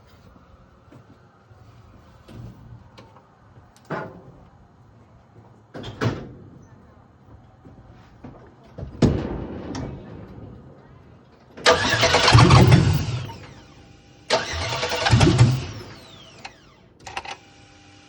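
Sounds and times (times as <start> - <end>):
engine cranking on starter: 11.6 - 18.0.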